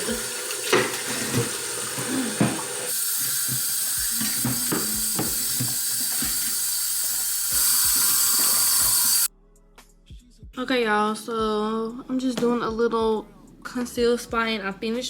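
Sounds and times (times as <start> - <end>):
dishes and cutlery clinking: 0.0 - 6.5
kitchen tap running: 0.0 - 9.3.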